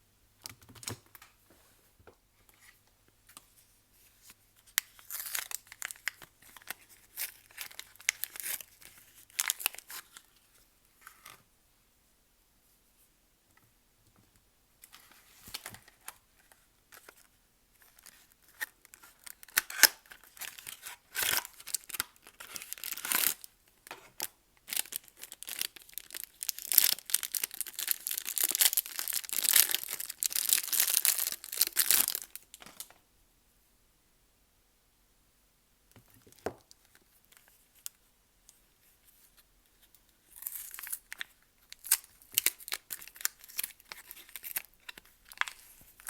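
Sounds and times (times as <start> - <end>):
packaging tearing and crinkling: 5.0 - 10.1, 18.4 - 23.5, 24.7 - 32.5, 40.3 - 46.0.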